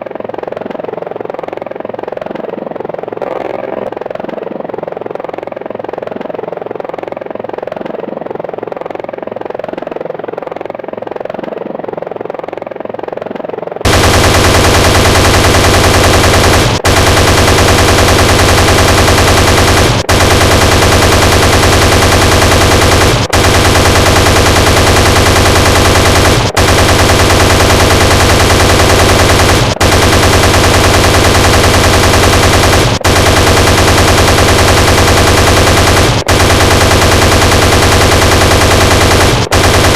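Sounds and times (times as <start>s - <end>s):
helicopter rotor: 0.0s - 39.9s
chain gun firing rapidly: 13.8s - 39.9s.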